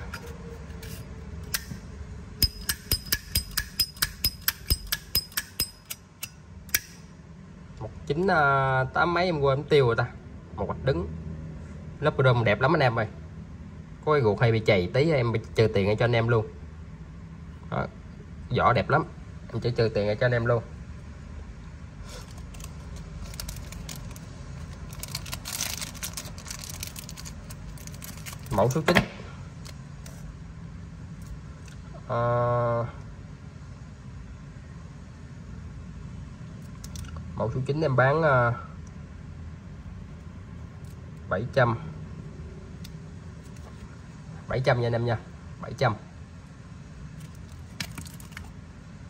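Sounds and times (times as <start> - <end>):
low steady hum: 0.0 - 49.0
crinkling handling noise: 22.1 - 30.3, 47.2 - 48.6.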